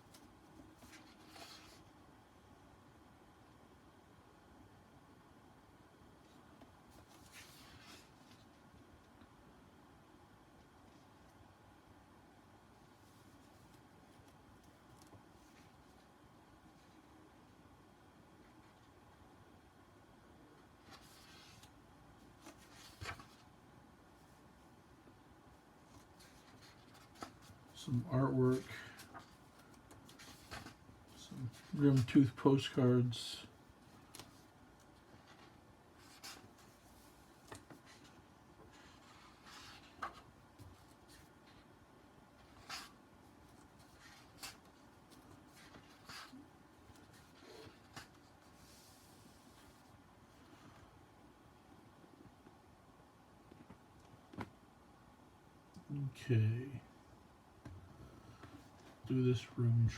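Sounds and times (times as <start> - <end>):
paper rustling: 20.8 - 21.8, 22.4 - 23.5, 25.9 - 32.7, 33.8 - 41.7.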